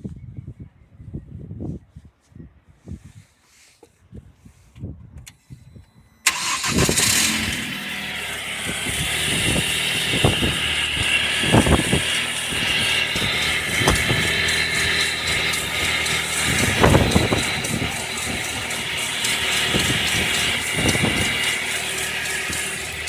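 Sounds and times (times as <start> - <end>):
high-pitched engine whine: 5.6 - 23.0
car engine starting and running: 6.2 - 23.0.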